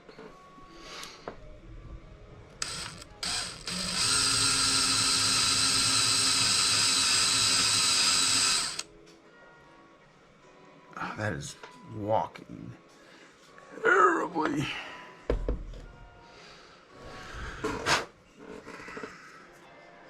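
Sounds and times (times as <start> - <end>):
electric drill boring wood: 2.6 - 8.9.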